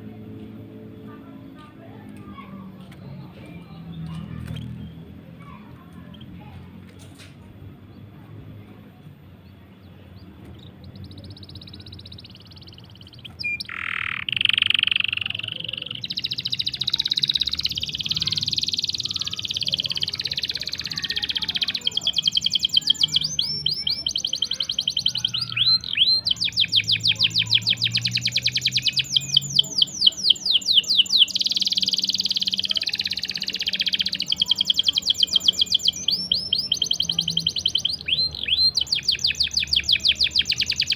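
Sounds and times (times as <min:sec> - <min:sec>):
canary singing trills: 0:09.4 - 0:40.9.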